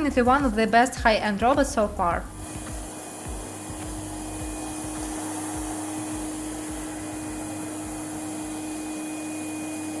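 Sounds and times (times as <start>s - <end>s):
hiss of air: 2.3s - 9.4s
robot vacuum motor drone: 2.5s - 10.0s.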